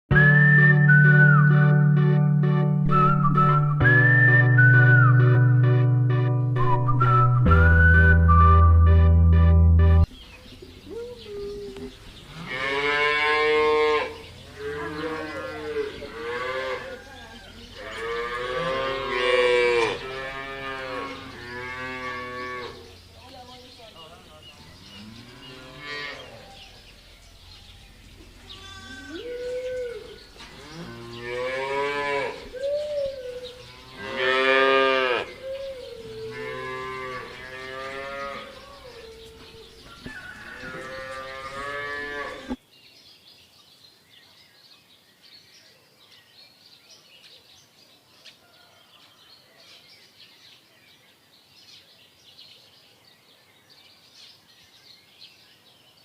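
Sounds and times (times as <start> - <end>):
cattle mooing: 12.4 - 17.0, 17.8 - 22.9, 28.7 - 32.5, 33.7 - 35.4, 36.1 - 39.1, 40.5 - 42.6.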